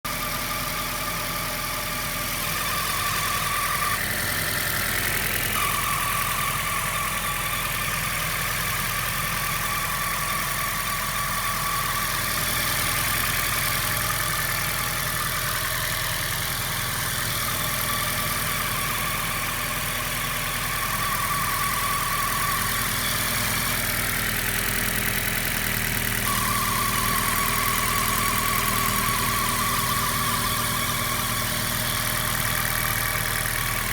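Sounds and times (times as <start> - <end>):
car engine idling: 0.1 - 33.9
high-pitched whine: 26.3 - 32.3.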